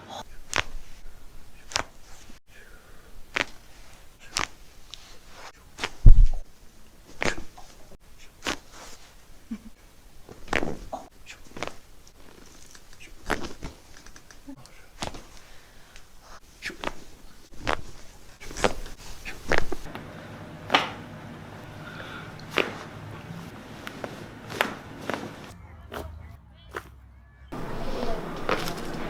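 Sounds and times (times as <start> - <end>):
steady low hum: 18.4 - 25.6, 27.6 - 29.0.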